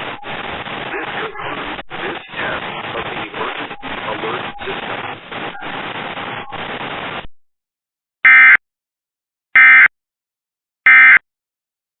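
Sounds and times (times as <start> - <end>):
hissy broadcast audio: 0.0 - 7.3.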